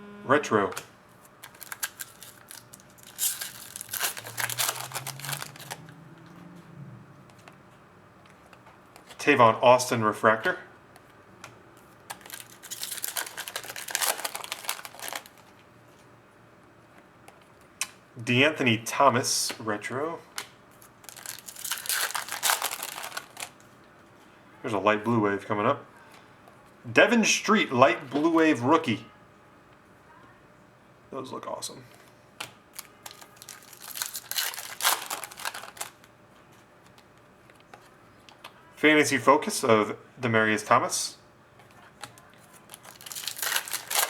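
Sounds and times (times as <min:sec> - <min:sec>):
trading cards clicking and rustling: 0:00.7 - 0:06.4, 0:10.4 - 0:15.7, 0:20.3 - 0:23.6, 0:31.9 - 0:36.1, 0:41.6 - 0:44.0
foil wrapper crinkling and tearing: 0:01.3 - 0:05.9, 0:12.1 - 0:15.6, 0:20.4 - 0:23.6, 0:32.7 - 0:36.1, 0:41.9 - 0:44.0.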